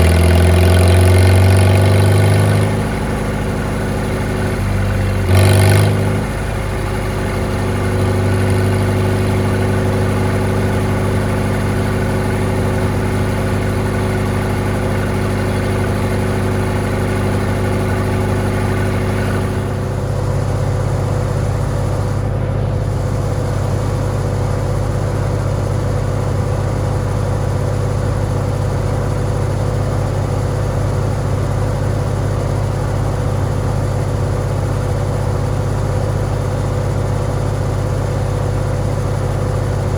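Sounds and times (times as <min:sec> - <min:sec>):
tractor engine running: 0:00.0 - 0:39.9.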